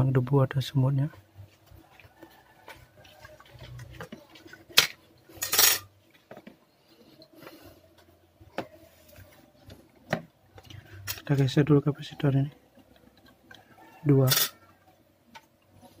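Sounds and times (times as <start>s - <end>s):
metal hand tools clattering: 5.4s - 5.9s.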